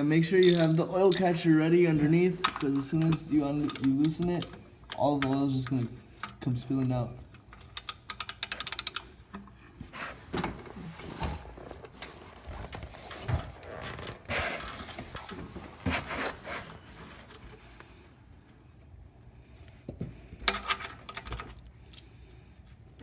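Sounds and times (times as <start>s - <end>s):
socket ratchet clicking: 0.4s - 1.3s, 3.7s - 5.1s, 7.7s - 9.1s
tools being handled: 0.4s - 1.4s, 2.4s - 6.4s, 7.3s - 9.6s.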